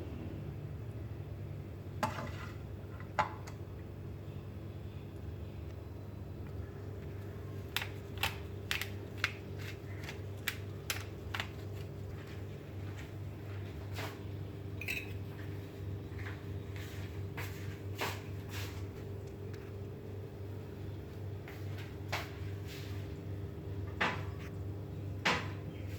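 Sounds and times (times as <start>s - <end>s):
low mechanical hum: 0.0s - 25.9s
utensils clinking on cookware: 14.8s - 15.3s.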